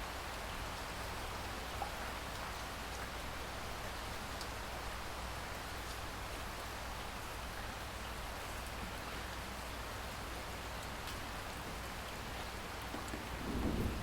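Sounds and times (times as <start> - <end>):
steady rain hiss: 0.0 - 14.0.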